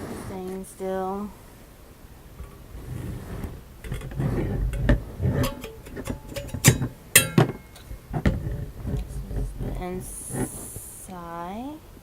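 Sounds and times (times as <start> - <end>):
rustling: 0.0 - 11.4
metal kettle clinks and knocks: 3.8 - 8.4.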